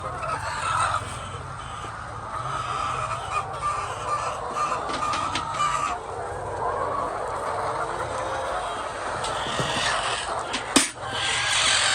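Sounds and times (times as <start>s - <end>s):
hens calling: 0.0s - 11.9s.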